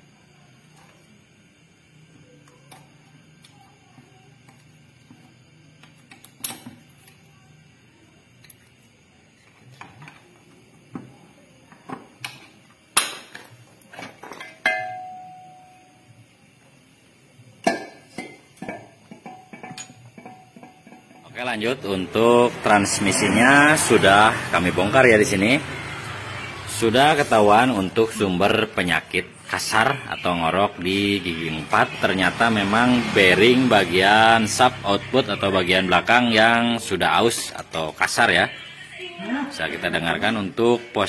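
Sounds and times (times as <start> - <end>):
metal part ringing: 14.4 - 15.9.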